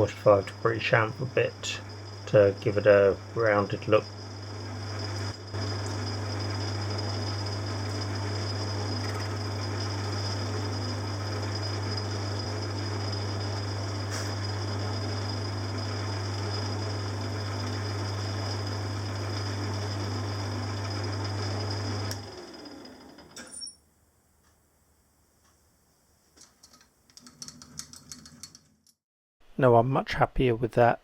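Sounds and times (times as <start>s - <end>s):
metal lathe motor humming: 0.0s - 23.7s.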